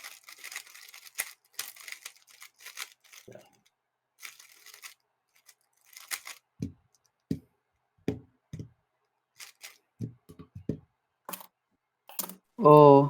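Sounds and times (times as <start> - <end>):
plastic puzzle cube clicking: 5.9 - 6.4.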